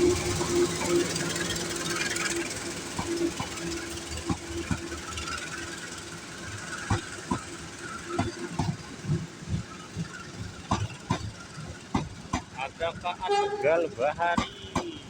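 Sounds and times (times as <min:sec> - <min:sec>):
train wheels clacking over rail joints: 0:00.0 - 0:15.0.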